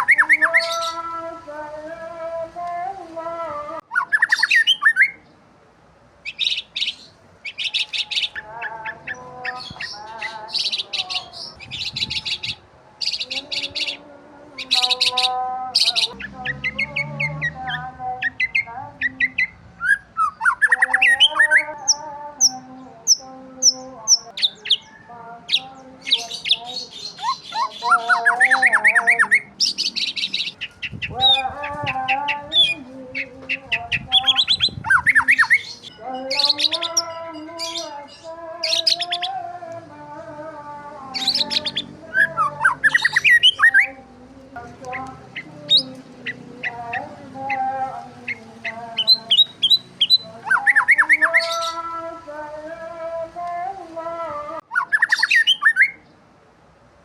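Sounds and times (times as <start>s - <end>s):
bird squawks: 0.0s - 1.0s, 3.9s - 5.2s, 26.2s - 35.8s, 41.2s - 43.9s, 54.7s - 56.0s
birds wavering calls: 0.0s - 1.3s, 3.8s - 5.3s, 6.2s - 39.6s, 41.0s - 52.1s, 54.6s - 56.2s
birds chirping: 0.0s - 3.0s, 3.8s - 5.5s, 6.2s - 53.7s, 54.6s - 56.2s.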